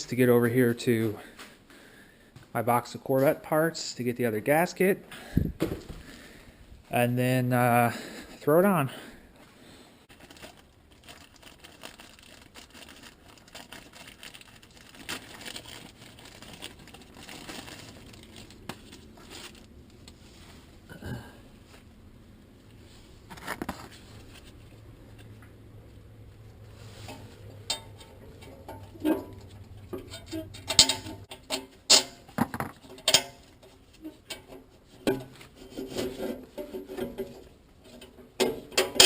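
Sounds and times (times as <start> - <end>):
rustling and crinkling: 9.4 - 20.9, 22.6 - 39.0.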